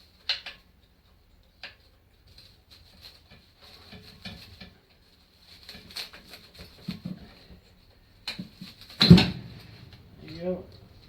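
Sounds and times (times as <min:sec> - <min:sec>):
heavier metal knocks: 0:09.0 - 0:10.8.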